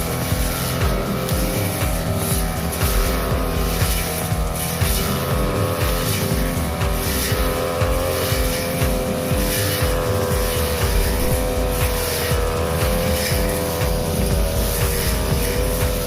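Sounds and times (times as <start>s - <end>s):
brush cutter engine cutting grass: 0.0s - 16.0s.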